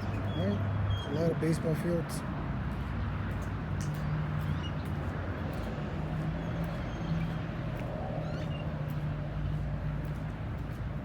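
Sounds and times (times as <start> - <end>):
road traffic noise: 0.0 - 11.0
light footsteps: 2.6 - 11.0.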